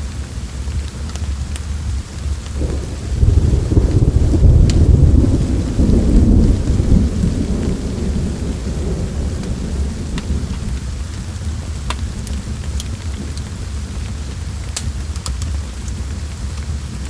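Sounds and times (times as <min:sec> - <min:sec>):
steady rain: 0:00.0 - 0:17.0
sharp thunder crackles: 0:02.5 - 0:13.4
thunder rumble: 0:02.5 - 0:14.0.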